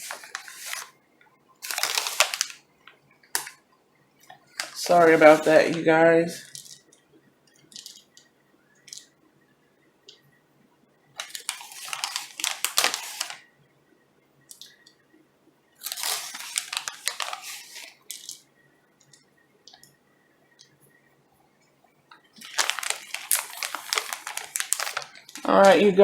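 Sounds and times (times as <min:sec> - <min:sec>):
plastic packaging crinkling: 0:00.0 - 0:01.0, 0:01.6 - 0:02.6, 0:03.3 - 0:03.6, 0:04.2 - 0:06.8, 0:11.2 - 0:13.4, 0:15.8 - 0:18.5, 0:22.3 - 0:26.0.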